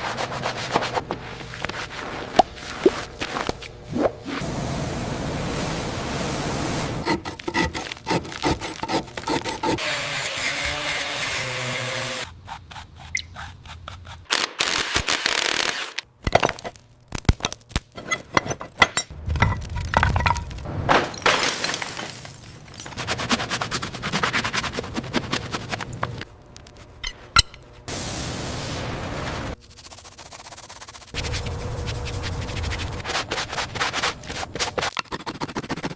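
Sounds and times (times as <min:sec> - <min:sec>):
tools scraping and knocking: 0:17.9 - 0:21.4.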